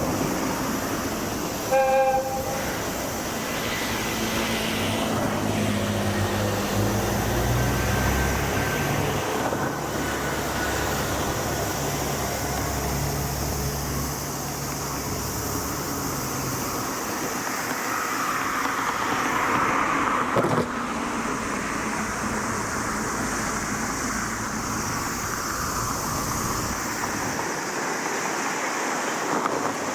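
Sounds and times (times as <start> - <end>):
low engine hum: 2.4 - 27.4
vehicle passing: 2.5 - 17.0.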